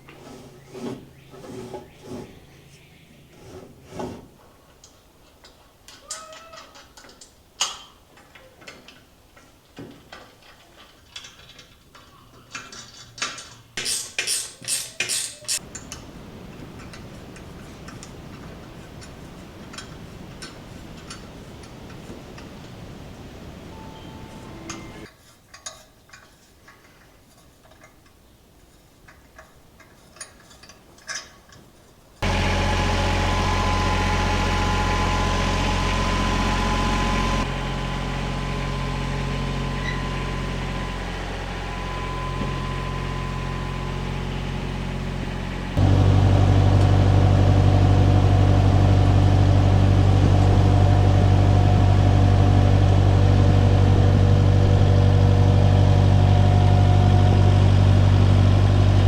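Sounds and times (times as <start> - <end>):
engine idling: 32.2 - 59.0.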